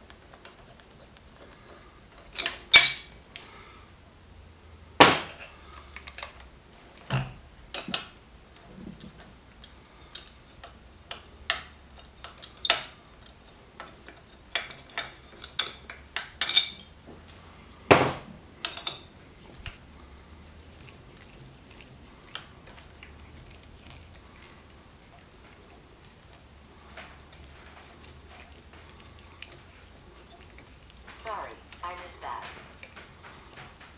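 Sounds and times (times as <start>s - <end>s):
metal tools clinking: 2.1s - 3.2s, 7.7s - 8.2s, 8.8s - 19.2s, 20.8s - 24.7s, 25.4s - 33.9s.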